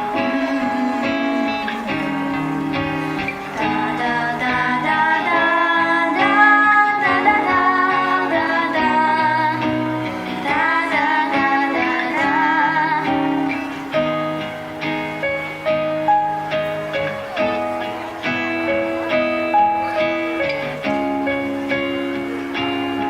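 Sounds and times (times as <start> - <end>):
girls singing a sad melody: 0.0 - 13.9
guitar accompaniment: 0.0 - 23.0.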